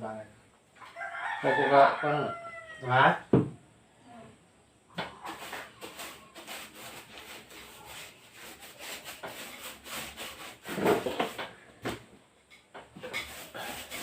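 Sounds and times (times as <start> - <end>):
rubbing strokes on wood: 5.0 - 11.5, 13.0 - 14.0.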